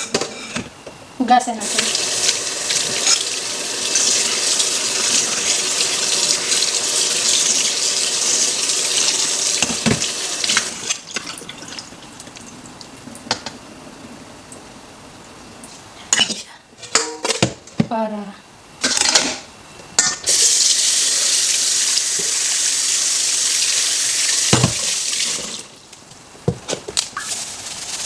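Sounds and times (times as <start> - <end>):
tap water running: 1.6 - 13.5, 20.3 - 28.0.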